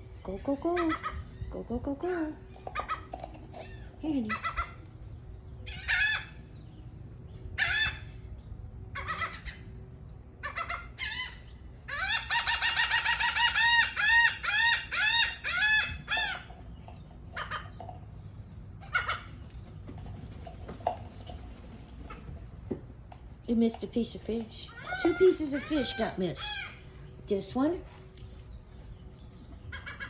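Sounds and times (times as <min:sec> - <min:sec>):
seagulls calling: 0:00.0 - 0:18.0, 0:18.8 - 0:19.5, 0:24.6 - 0:27.3, 0:29.2 - 0:30.0.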